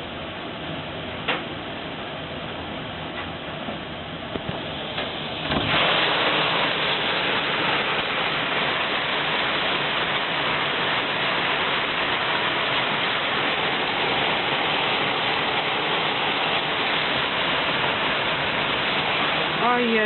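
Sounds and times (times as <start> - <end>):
heavy rain and hail: 4.3 - 20.0.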